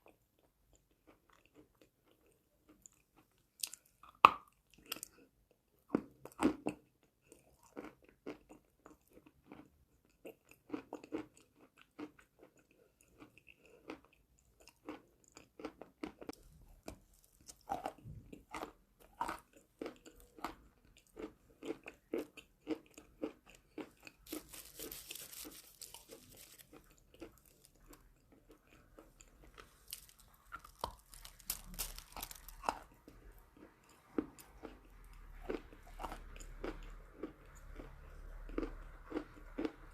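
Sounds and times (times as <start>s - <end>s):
crunchy chewing: 5.9s - 39.9s.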